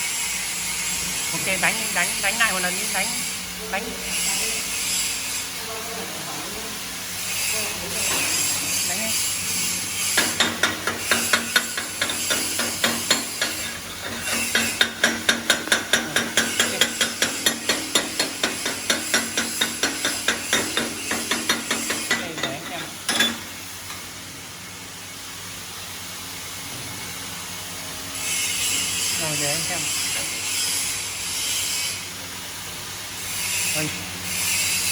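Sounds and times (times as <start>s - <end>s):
welding arc crackling: 0.8s - 5.4s, 7.1s - 23.8s.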